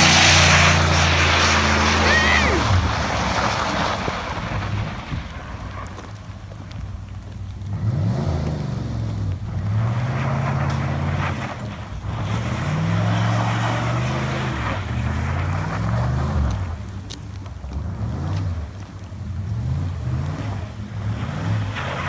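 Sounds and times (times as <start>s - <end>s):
rushing noise: 0.0s - 5.8s
truck engine revving: 0.0s - 6.6s, 7.5s - 22.0s.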